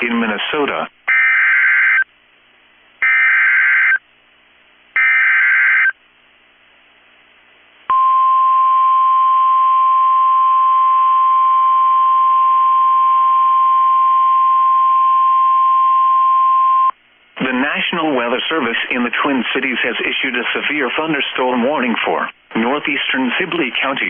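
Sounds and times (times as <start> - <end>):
steady alarm tone: 1.1 - 2.1, 3.0 - 4.0, 5.0 - 6.0
harsh digital data screech: 3.0 - 4.0, 5.0 - 6.0.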